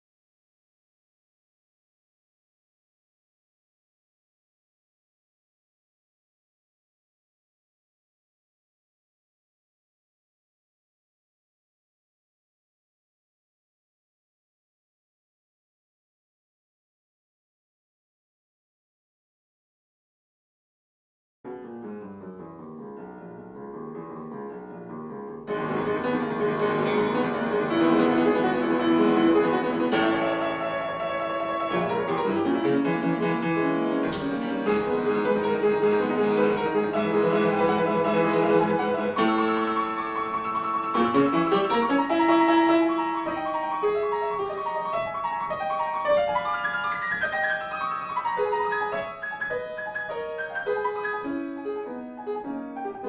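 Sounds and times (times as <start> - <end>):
classical-style keyboard music: 21.5 - 53.0.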